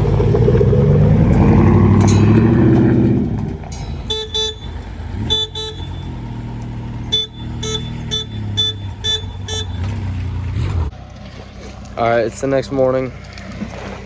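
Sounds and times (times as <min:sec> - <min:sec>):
engine running: 0:00.0 - 0:14.0
vehicle horn short beeps: 0:03.8 - 0:06.4, 0:07.0 - 0:10.1.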